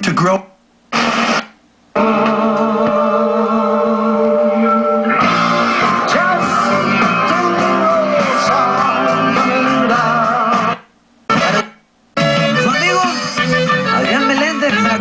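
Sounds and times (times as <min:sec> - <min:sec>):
rock song with singing and guitar: 0:02.0 - 0:11.6.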